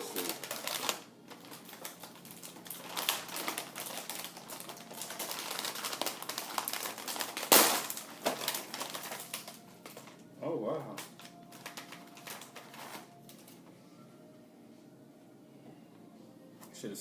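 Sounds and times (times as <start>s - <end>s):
wrapper ripping: 0.0s - 10.2s, 10.8s - 13.6s
plastic wrapper crinkling: 0.0s - 13.6s.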